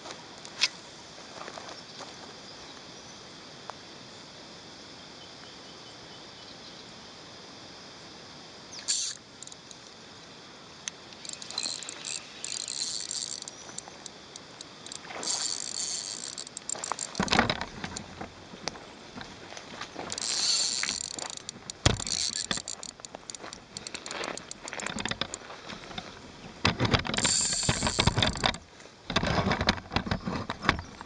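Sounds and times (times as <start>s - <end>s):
high-pitched insect drone: 5.0s - 29.2s.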